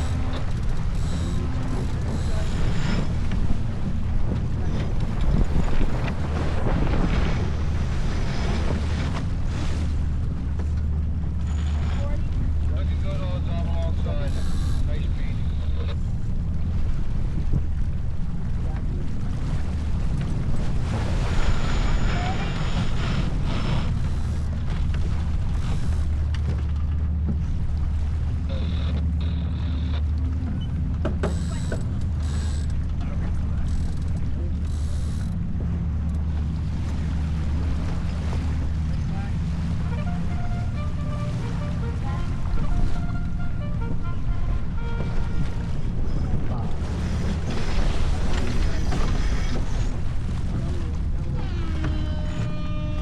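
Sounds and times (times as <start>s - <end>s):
deck gear clicks and creaks: 0.0s - 9.4s, 10.2s - 16.4s, 20.1s - 36.5s, 44.6s - 53.0s
low wind: 0.0s - 53.0s
water rushing past hull: 0.0s - 53.0s
high squeak: 11.4s - 12.3s, 21.2s - 24.4s, 51.4s - 53.0s.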